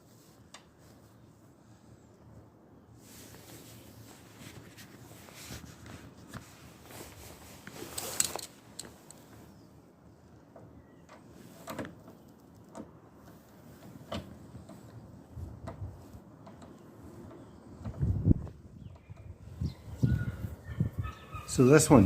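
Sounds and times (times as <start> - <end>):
scraping rustle: 3.0 - 9.5.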